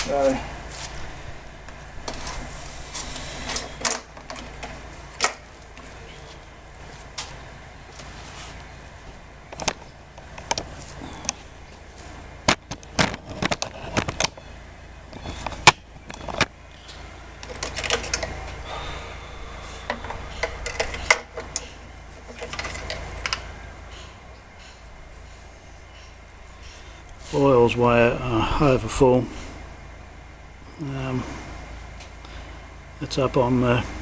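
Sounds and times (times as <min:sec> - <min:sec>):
sharp clicks and knocks: 0:09.5 - 0:11.4, 0:12.4 - 0:14.4, 0:19.9 - 0:23.4.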